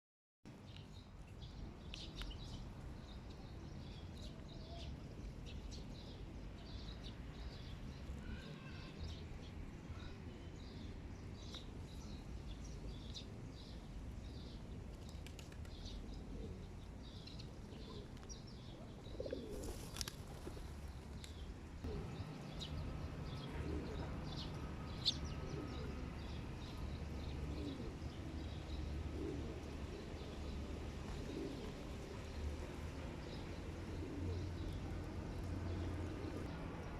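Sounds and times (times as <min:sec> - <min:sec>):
small birds chirping: 0:00.5 - 0:36.9
pigeons flapping wings: 0:14.9 - 0:15.7, 0:19.5 - 0:20.8
pigeons cooing: 0:15.3 - 0:16.9, 0:17.7 - 0:20.8, 0:21.9 - 0:36.5.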